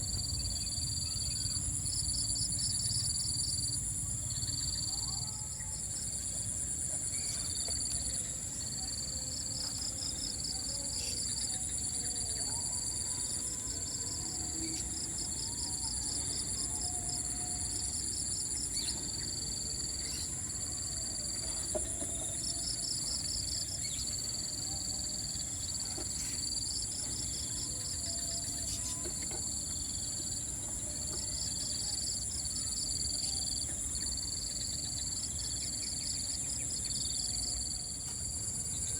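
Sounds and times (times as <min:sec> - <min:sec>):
insects high continuous trills: 0:00.0 - 0:38.9
lower pulsed insect chirping: 0:26.4 - 0:38.9.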